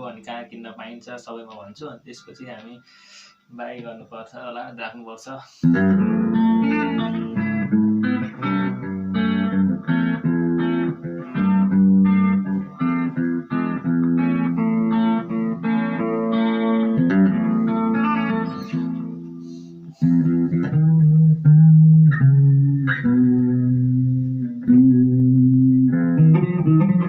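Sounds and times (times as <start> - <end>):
electric guitar notes and chords: 5.6 - 27.0.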